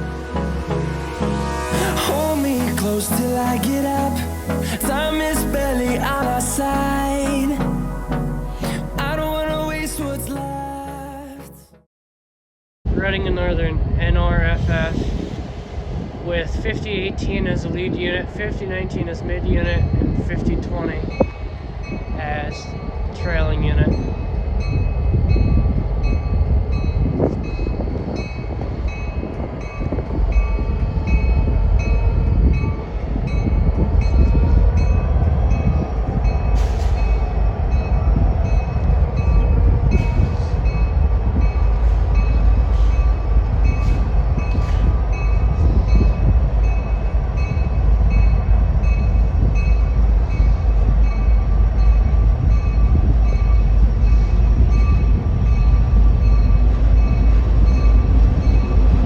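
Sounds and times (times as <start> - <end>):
freight train rumbling past: 0.0 - 10.4, 12.9 - 59.0
train wheels clicking: 36.5 - 59.0.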